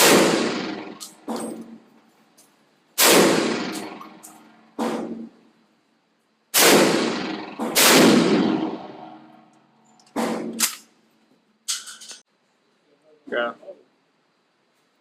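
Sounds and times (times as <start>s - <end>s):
loud shotgun shots with echo: 0.0s - 1.4s, 3.0s - 4.2s, 6.5s - 9.2s.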